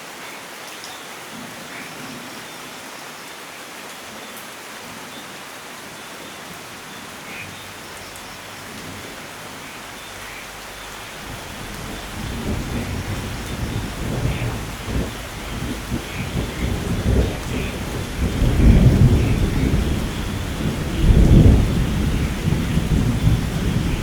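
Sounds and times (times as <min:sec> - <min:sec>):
steady rain falling: 0:00.0 - 0:24.0
low thunder rumble: 0:10.1 - 0:24.0.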